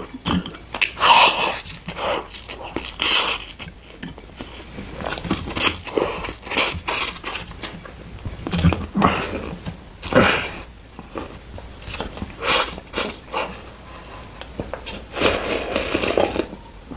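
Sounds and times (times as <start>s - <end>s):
biting and chewing: 0.0s - 10.3s.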